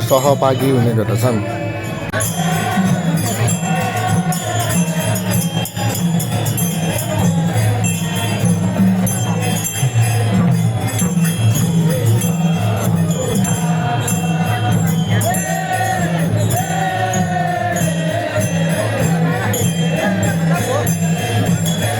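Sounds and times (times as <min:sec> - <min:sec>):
steady drum beat: 0:00.0 - 0:01.5
small cymbals and bells ringing: 0:00.0 - 0:21.9.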